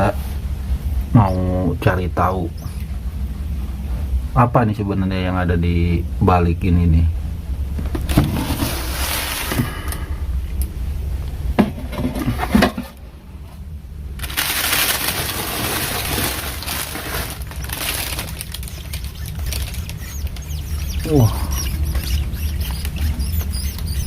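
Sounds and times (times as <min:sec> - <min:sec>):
scraping and rustling handling: 0:07.8 - 0:09.8, 0:14.2 - 0:24.0.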